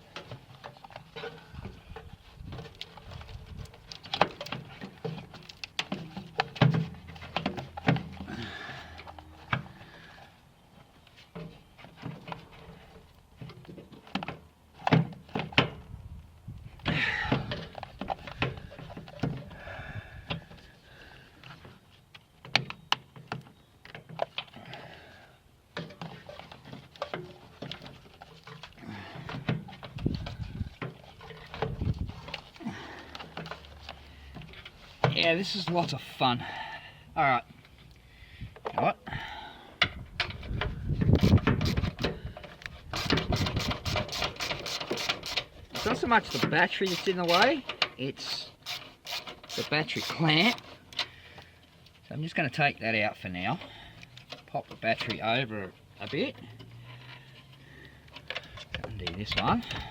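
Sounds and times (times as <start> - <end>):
tools knocking and rattling: 58.2 - 59.9.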